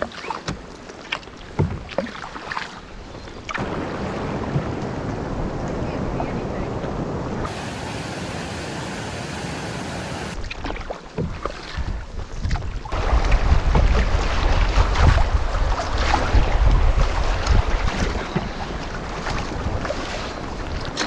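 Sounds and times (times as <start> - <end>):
waves washing: 3.6 - 10.4
wind buffeting microphone: 3.6 - 10.5, 11.8 - 20.9.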